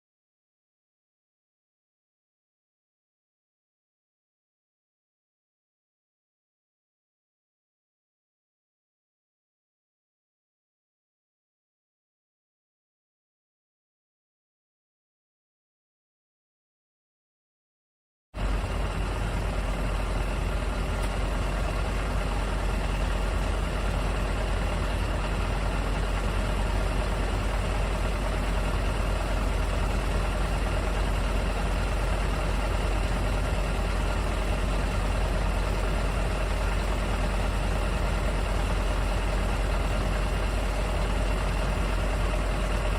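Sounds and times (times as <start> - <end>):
truck engine idling: 18.4 - 42.9.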